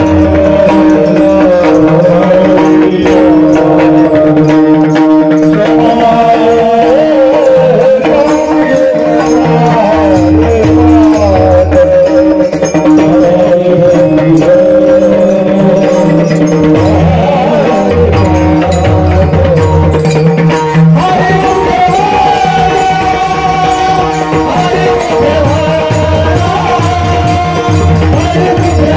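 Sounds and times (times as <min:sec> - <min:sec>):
person singing wavering notes: 0:00.0 - 0:28.9.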